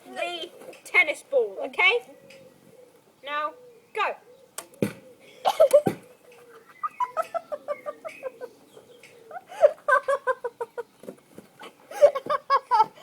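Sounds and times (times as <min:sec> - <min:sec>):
person laughing: 0:05.4 - 0:06.0, 0:06.7 - 0:08.6, 0:09.3 - 0:10.9, 0:11.6 - 0:13.0.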